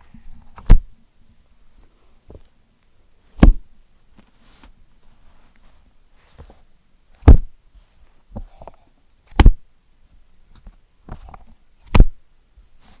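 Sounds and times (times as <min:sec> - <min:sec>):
loud page snaps: 0:11.8 - 0:12.2.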